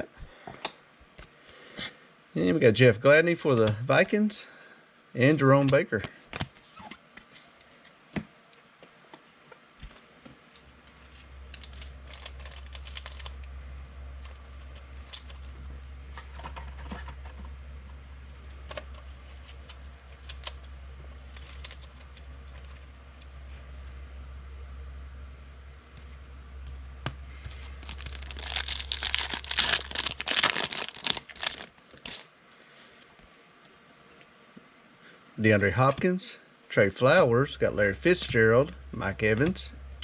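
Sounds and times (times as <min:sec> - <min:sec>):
steady low hum: 0:00.0 - 0:40.0
cards being shuffled and sorted: 0:05.6 - 0:08.3, 0:09.1 - 0:13.6, 0:14.2 - 0:17.3, 0:18.3 - 0:23.3, 0:25.8 - 0:32.3
foil wrappers rustling: 0:10.6 - 0:13.5, 0:14.2 - 0:15.6, 0:18.3 - 0:23.0, 0:27.4 - 0:32.3.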